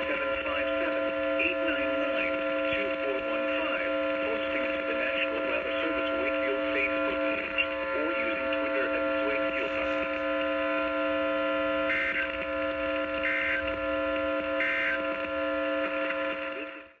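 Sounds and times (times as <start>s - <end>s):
steady electrical hum: 0.0s - 16.9s
data bursts: 13.2s - 15.8s.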